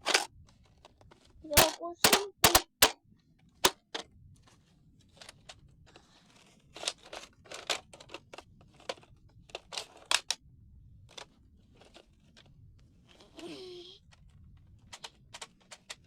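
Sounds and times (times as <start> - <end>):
rustling scrapes: 0.0 - 1.6, 4.3 - 10.2, 11.1 - 16.0
plastic clicks and clacks: 0.0 - 4.1, 5.1 - 10.4, 11.0 - 12.5, 14.0 - 16.0.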